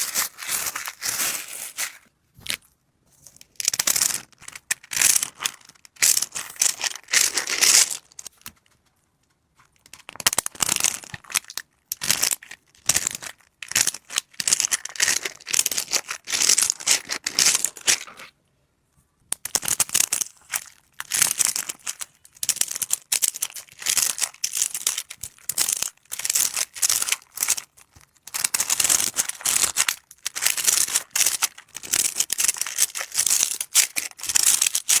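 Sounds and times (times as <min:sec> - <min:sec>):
plastic crinkling: 0:00.0 - 0:02.6, 0:20.4 - 0:35.0.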